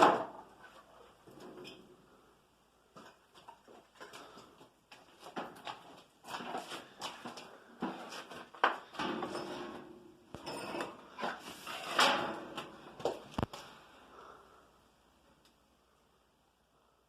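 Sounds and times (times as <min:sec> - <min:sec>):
metal clanks and scraping: 0:08.9 - 0:12.7.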